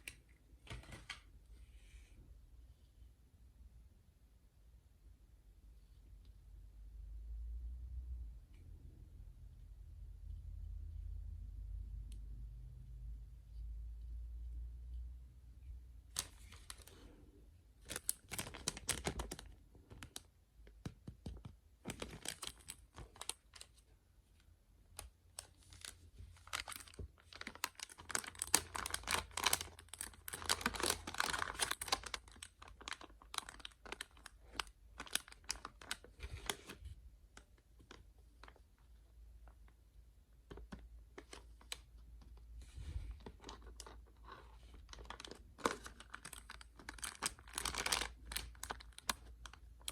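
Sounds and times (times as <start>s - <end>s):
packaging crinkling and tearing: 16.1s - 17.1s, 17.8s - 20.3s, 21.8s - 23.8s, 25.0s - 36.8s, 43.2s - 49.9s.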